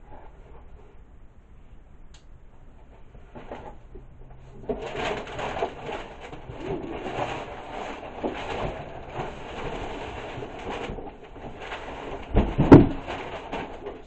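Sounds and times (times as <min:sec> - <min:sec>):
cardboard box rustling and scraping: 0:03.0 - 0:14.0.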